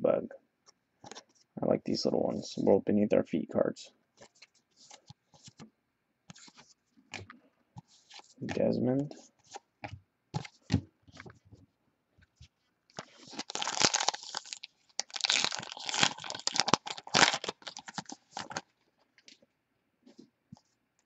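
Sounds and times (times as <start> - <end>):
foil wrapper tearing and crinkling: 13.0 - 18.6.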